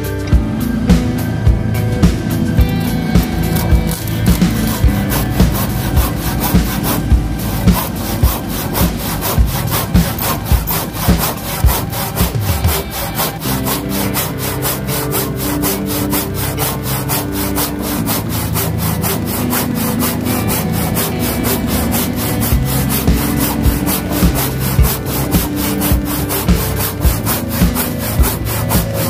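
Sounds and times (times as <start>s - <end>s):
handsaw cutting wood: 3.1s - 29.0s.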